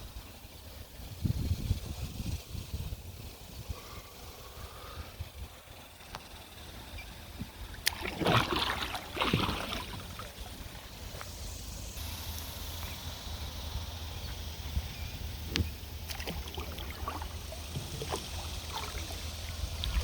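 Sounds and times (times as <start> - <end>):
water splashes: 7.6 - 11.2, 15.9 - 20.0.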